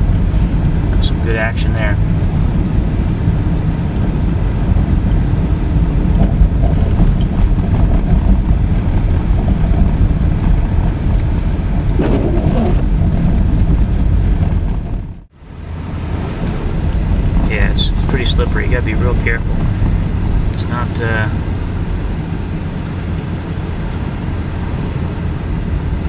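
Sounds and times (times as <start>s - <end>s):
car driving rumble inside cabin: 0.0s - 26.0s.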